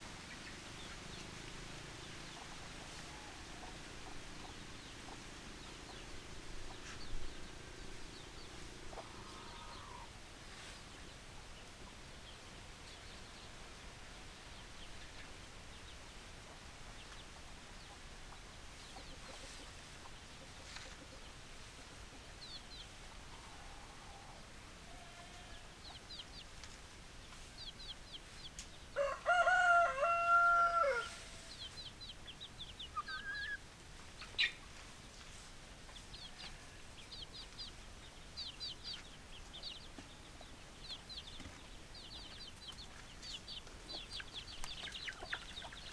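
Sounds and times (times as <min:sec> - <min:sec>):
chicken clucking: 0:08.1 - 0:10.1, 0:16.5 - 0:21.4, 0:29.0 - 0:33.6, 0:38.4 - 0:45.9
rooster crowing: 0:29.0 - 0:31.3.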